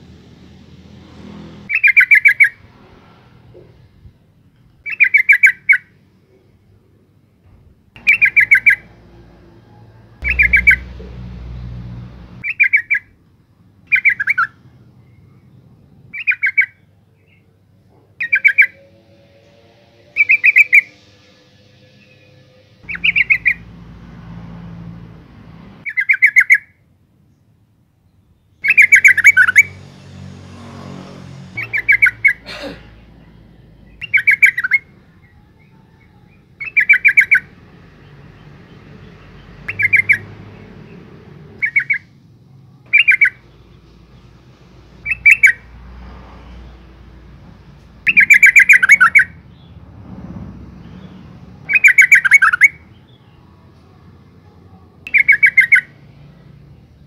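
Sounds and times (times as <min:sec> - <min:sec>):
bird calling in stuttering bursts: 0:08.0 - 0:09.0, 0:10.2 - 0:11.0, 0:22.8 - 0:23.7, 0:31.6 - 0:32.5, 0:51.7 - 0:52.8.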